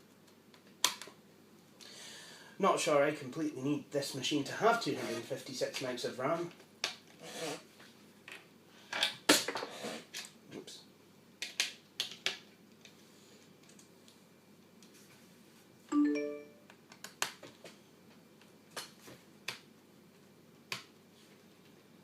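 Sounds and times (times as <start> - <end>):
electronic chime ding: 15.9 - 16.6.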